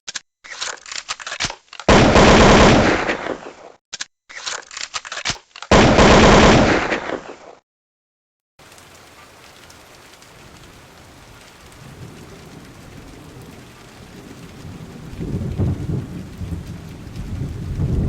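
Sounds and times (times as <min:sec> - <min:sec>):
automatic gunfire: 0:01.9 - 0:03.6, 0:05.7 - 0:07.4.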